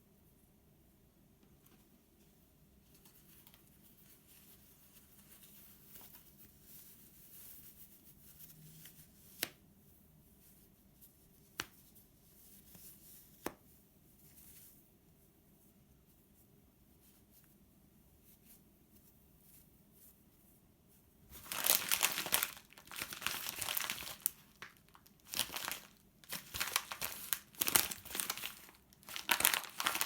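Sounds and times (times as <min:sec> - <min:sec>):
packaging rustling: 0:21.3 - 0:30.0.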